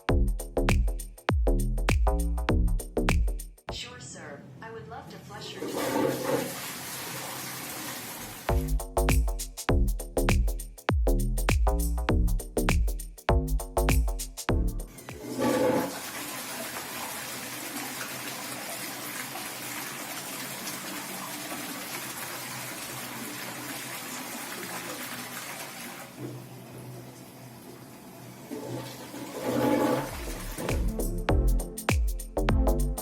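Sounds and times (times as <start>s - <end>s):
toilet flushing: 5.6s - 8.5s, 14.9s - 30.9s.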